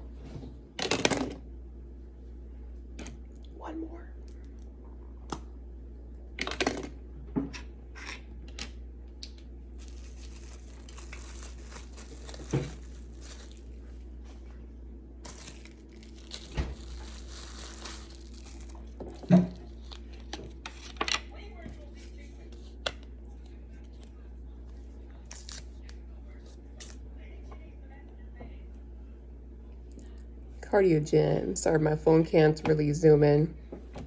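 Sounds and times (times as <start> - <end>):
packaging crinkling and tearing: 9.7 - 13.9, 15.2 - 21.0.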